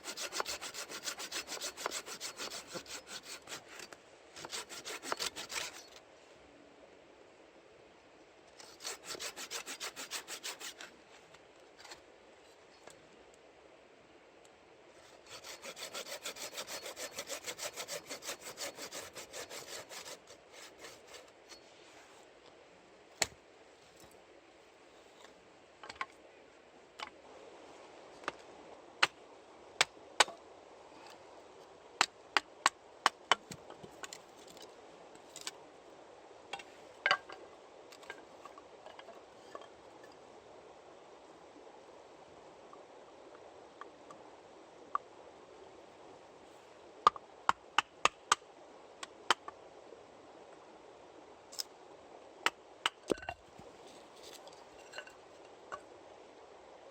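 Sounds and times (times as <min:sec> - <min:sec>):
hand saw cutting wood: 0:00.0 - 0:06.0, 0:08.6 - 0:10.9, 0:15.1 - 0:21.6.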